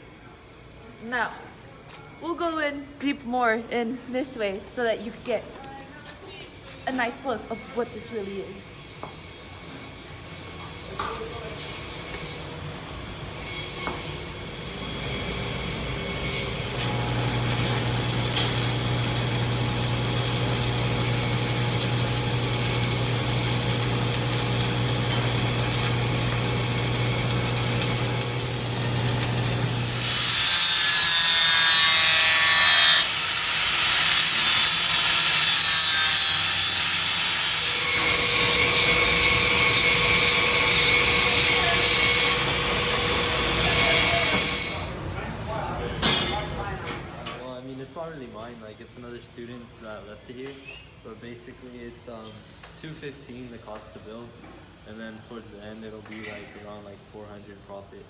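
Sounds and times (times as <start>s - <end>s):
hissy power tool working material: 13.3s - 45.0s
motor humming: 15.7s - 45.0s.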